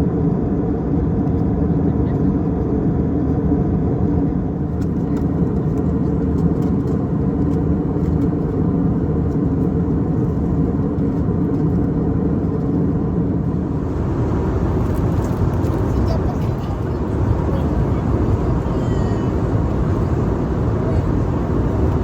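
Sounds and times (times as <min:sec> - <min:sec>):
airliner engine and airflow rumble: 0:00.0 - 0:22.0
steady hums: 0:13.3 - 0:22.0.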